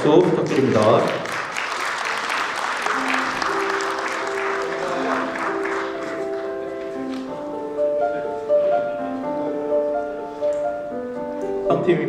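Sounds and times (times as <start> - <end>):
audience applauding: 0.0 - 11.5
background music with held notes: 2.9 - 12.0.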